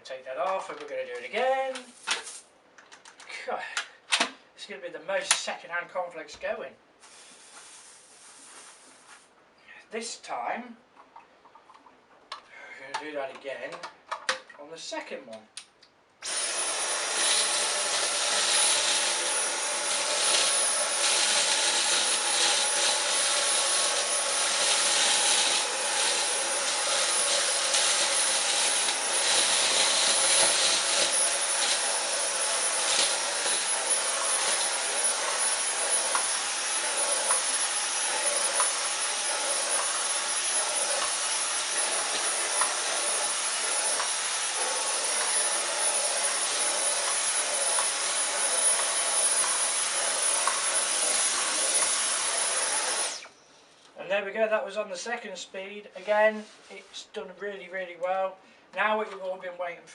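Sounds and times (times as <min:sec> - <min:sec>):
vacuum cleaner whining: 0:16.2 - 0:53.4.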